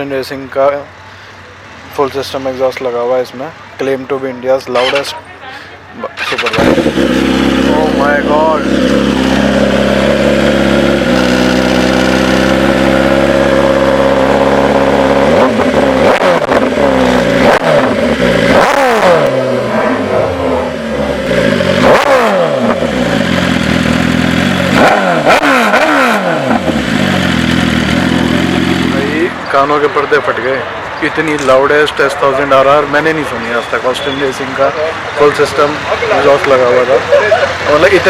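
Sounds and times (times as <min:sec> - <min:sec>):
motorcycle engine revving: 0:06.1 - 0:30.0
motorcycle engine idling: 0:06.2 - 0:16.0, 0:22.6 - 0:24.7, 0:26.5 - 0:29.3.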